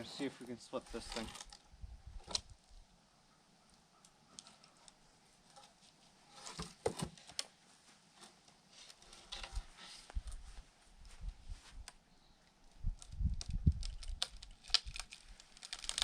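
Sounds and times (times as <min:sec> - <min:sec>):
wood cracking and splitting: 0:00.8 - 0:02.6, 0:12.7 - 0:16.0.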